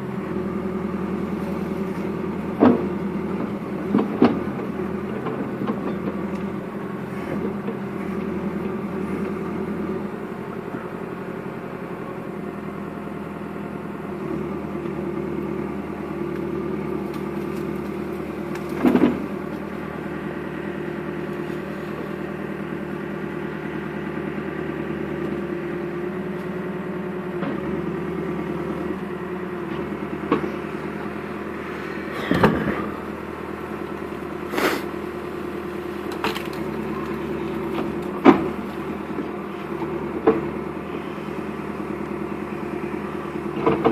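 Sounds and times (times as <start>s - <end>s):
backhoe engine running: 0.0s - 43.9s.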